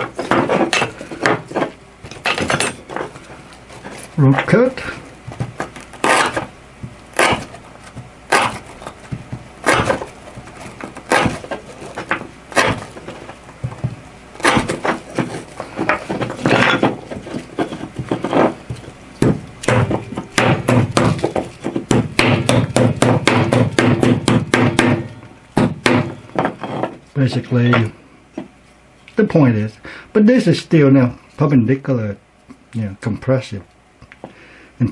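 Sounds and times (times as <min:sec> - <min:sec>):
knife chopping rope onto bone: 0:06.0 - 0:11.6, 0:12.6 - 0:12.9, 0:14.4 - 0:15.4.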